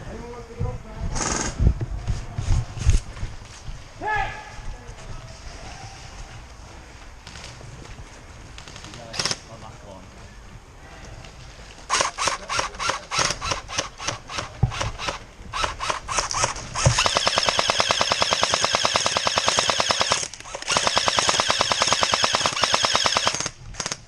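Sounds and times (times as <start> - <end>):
airsoft guns firing: 11.9 - 24.0.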